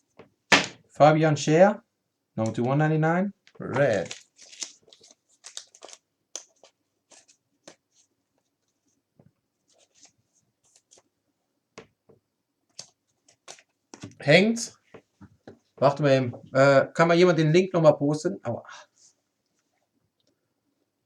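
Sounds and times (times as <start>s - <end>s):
trading cards and wrapper rustling: 3.5s - 8.1s.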